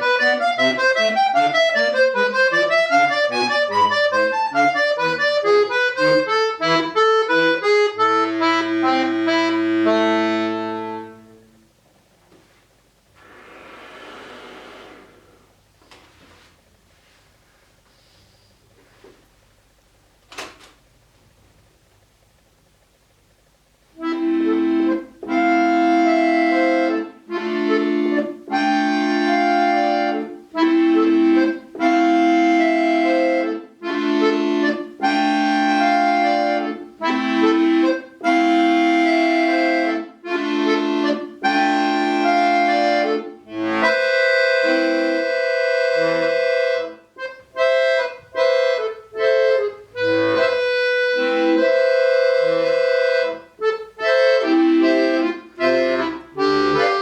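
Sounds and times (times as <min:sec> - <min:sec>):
accordion playing chords: 0:00.0 - 0:11.8, 0:24.0 - 0:57.0.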